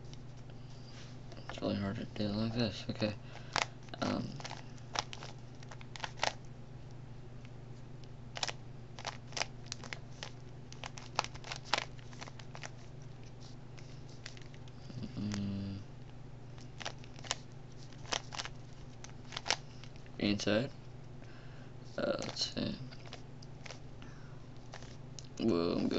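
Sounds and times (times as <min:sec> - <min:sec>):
puzzle cube clicking: 0:03.5 - 0:06.4, 0:16.8 - 0:19.9.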